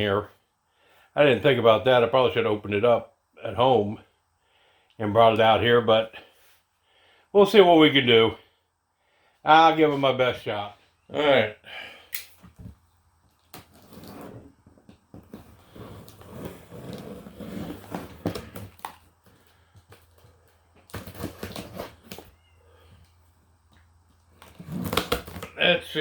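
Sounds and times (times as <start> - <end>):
rustling and knocks of handling: 12.4 - 25.6.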